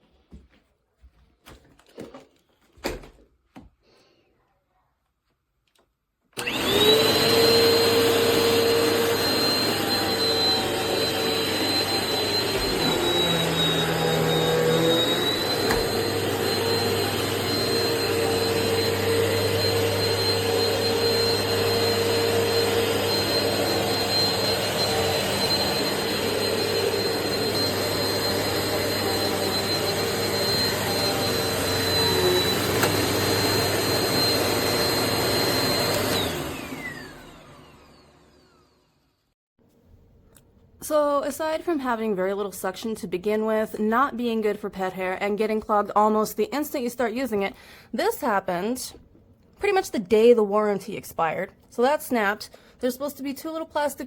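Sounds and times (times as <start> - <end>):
vacuum cleaner motor whine: 6.4 - 39.3.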